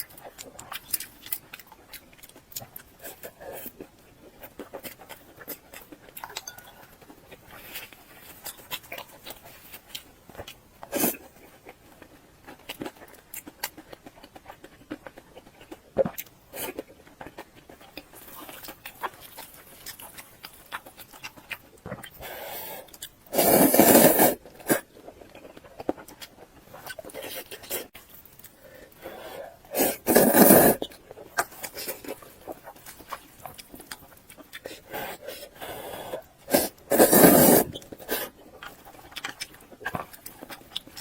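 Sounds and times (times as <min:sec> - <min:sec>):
wet chewing and mouth clicks: 0:00.0 - 0:41.0
loud crunching bite or slurp: 0:23.3 - 0:24.8, 0:29.7 - 0:30.9, 0:36.5 - 0:38.3.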